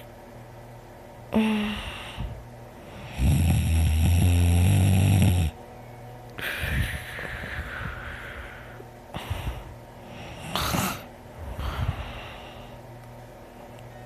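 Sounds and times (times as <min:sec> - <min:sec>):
person snoring loudly: 0:02.9 - 0:05.6, 0:10.1 - 0:12.4.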